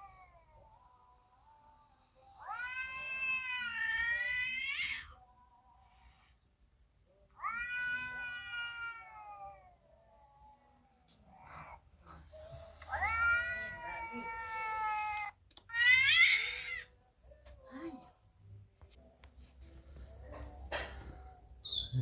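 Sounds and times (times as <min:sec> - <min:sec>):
cat meowing: 0:02.4 - 0:05.4, 0:07.3 - 0:11.8, 0:12.8 - 0:16.9.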